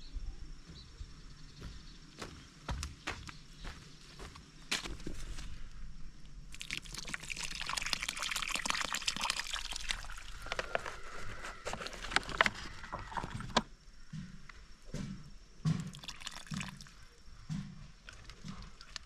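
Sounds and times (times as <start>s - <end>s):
water pouring and splashing: 6.5s - 12.5s, 15.8s - 17.1s.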